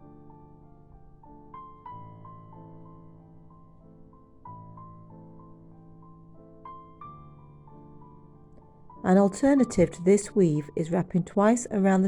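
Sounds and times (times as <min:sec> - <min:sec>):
soft piano music: 0:00.0 - 0:12.0.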